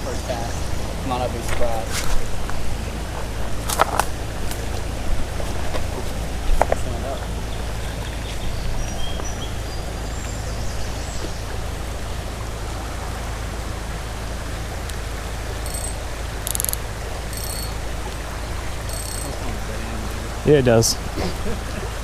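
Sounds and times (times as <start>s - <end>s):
shallow creek water rushing: 0.0s - 22.0s
short high-pitched ticks: 15.6s - 17.8s, 18.9s - 19.4s
faint high chirps: 15.6s - 19.5s.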